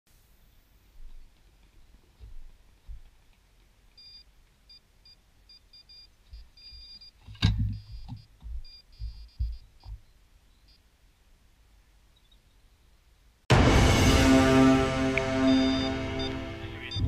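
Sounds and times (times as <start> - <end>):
electronic bite alarm beeping: 5.5 - 7.2, 7.8 - 9.7, 15.2 - 17.0
dull thumps: 6.3 - 10.1.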